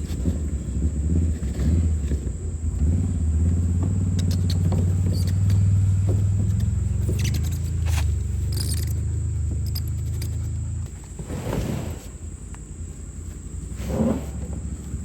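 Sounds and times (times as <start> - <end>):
motor rumbling: 0.0 - 15.0
light clicks and knocks: 3.4 - 11.2.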